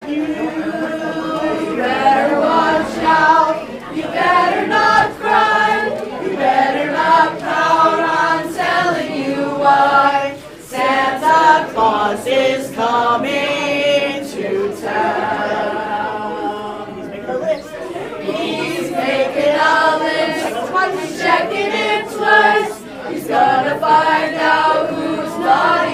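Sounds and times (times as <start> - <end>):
choir singing unaccompanied: 0.0 - 25.9.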